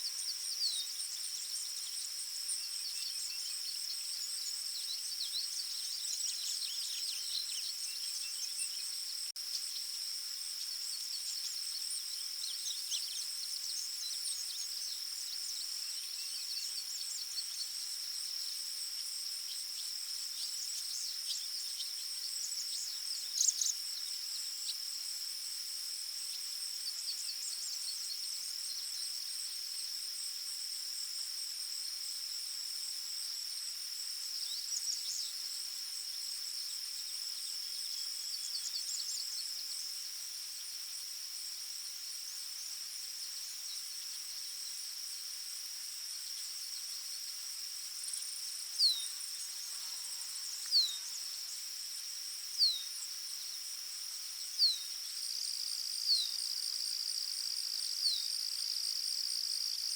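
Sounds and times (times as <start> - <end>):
small birds chirping: 0.0 - 17.9, 19.4 - 24.8, 48.0 - 51.6
high insect trill: 0.0 - 59.9.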